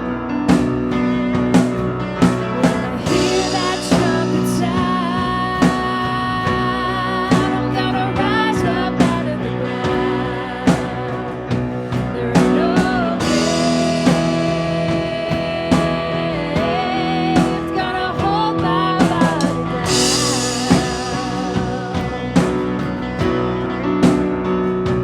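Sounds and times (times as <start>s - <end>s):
drum kit beat: 0.0s - 25.0s
guitar chords: 0.0s - 25.0s
person singing: 2.3s - 23.4s.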